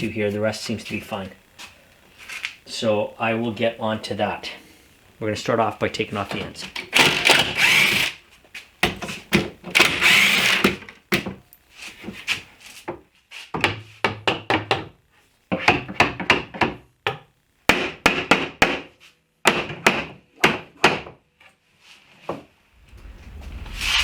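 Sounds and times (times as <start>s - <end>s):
power drill running: 6.9s - 8.2s, 9.8s - 10.8s.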